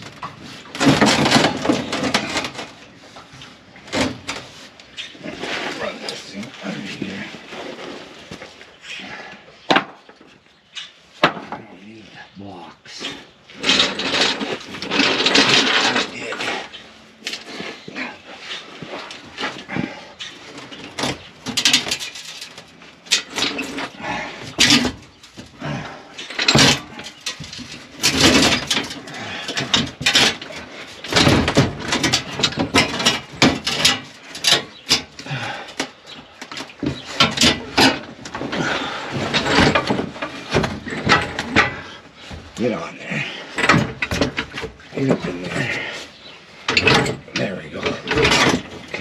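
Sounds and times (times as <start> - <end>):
metal tools clanking and scraping: 0.0 - 12.0, 13.0 - 49.0.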